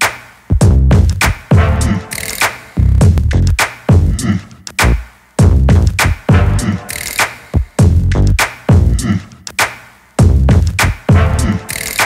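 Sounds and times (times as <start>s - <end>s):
electronic music with heavy beat: 0.0s - 12.0s.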